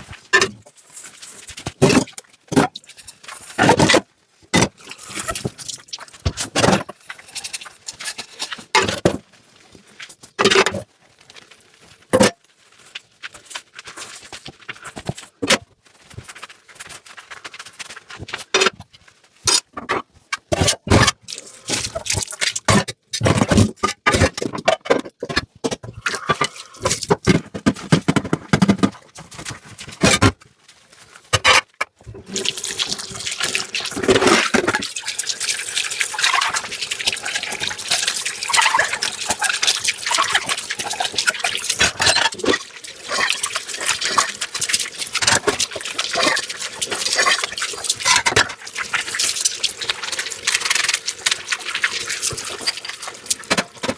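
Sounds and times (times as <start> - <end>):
dishes clinking and scraping: 24.2 - 26.9.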